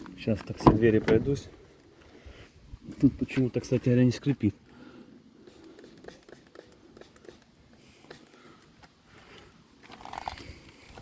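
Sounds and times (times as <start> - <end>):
car door opening and shutting: 0.4 - 1.5.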